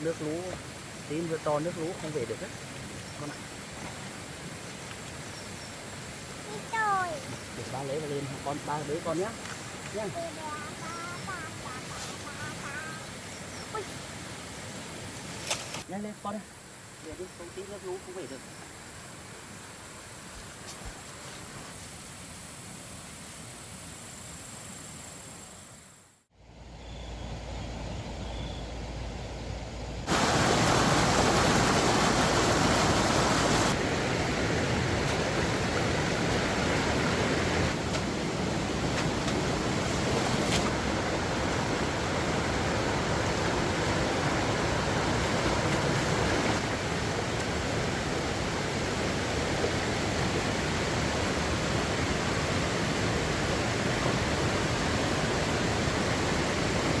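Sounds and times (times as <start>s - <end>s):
flowing water rushing: 0.0s - 20.4s, 30.1s - 57.0s.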